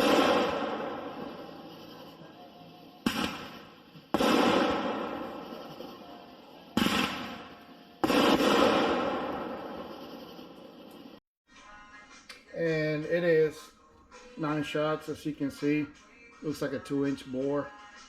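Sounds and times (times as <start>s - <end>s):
firework shell bursting: 0.0s - 11.2s
firework launch thump: 3.0s - 5.7s, 6.8s - 10.3s.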